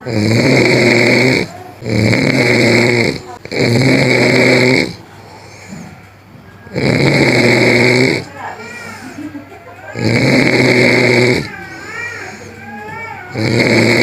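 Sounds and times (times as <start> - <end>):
loud snoring: 0.0 - 5.0, 6.7 - 8.3, 9.9 - 11.6, 13.3 - 14.0.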